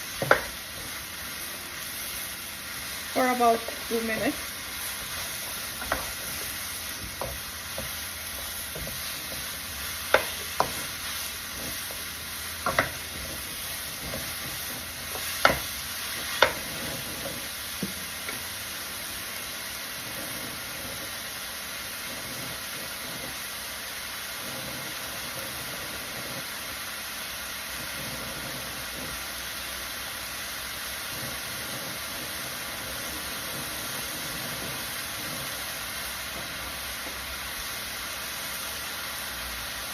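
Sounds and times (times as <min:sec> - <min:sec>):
mushrooms sizzling in hot oil: 0:00.0 - 0:39.9
spoon knocking against pan: 0:00.2 - 0:00.6, 0:05.8 - 0:09.4, 0:10.1 - 0:10.9, 0:12.6 - 0:13.4, 0:14.0 - 0:16.7.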